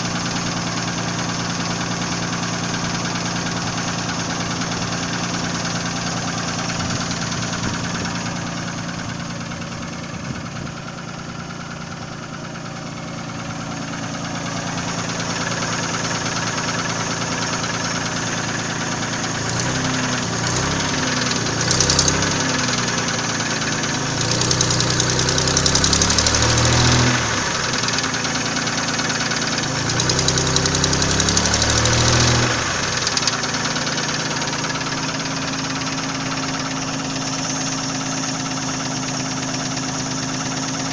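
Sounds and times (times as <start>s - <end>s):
car engine idling with knock: 0.0s - 40.9s
engine revving: 14.3s - 40.9s.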